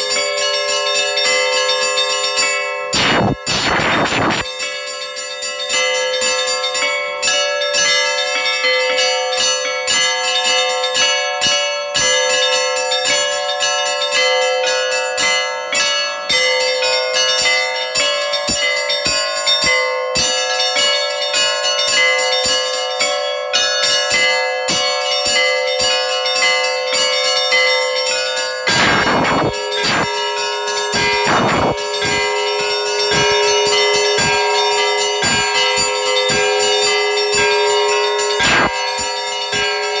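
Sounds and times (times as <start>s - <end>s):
hum of larger bells: 0.0s - 40.0s
small bells ringing rapidly: 0.0s - 40.0s
bursts of rushing noise: 3.0s - 4.5s, 28.7s - 34.5s.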